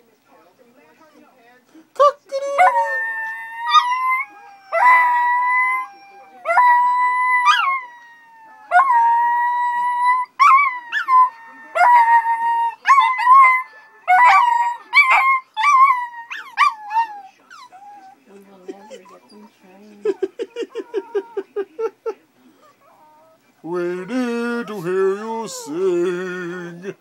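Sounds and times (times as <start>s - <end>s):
small dogs howling: 2.6s - 18.2s, 20.1s - 21.6s, 22.6s - 25.8s.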